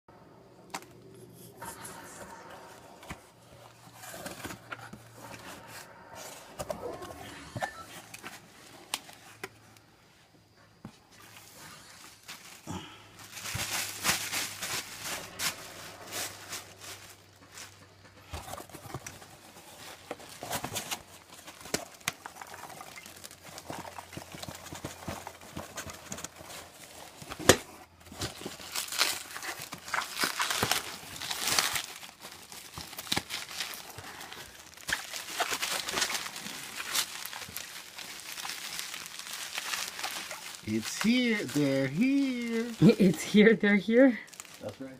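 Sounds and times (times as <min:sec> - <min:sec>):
packaging crinkling and rustling: 0:00.6 - 0:09.8, 0:11.1 - 0:44.9.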